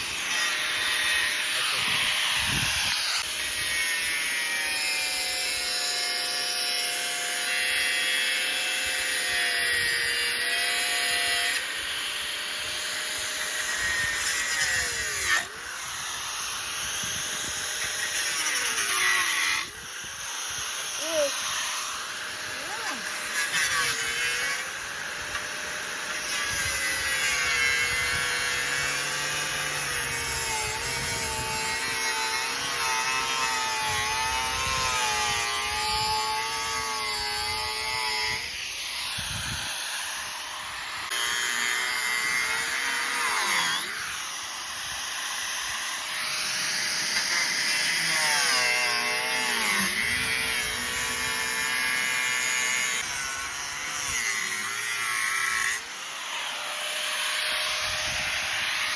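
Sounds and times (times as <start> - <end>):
power tool cutting metal: 0.0 - 58.9.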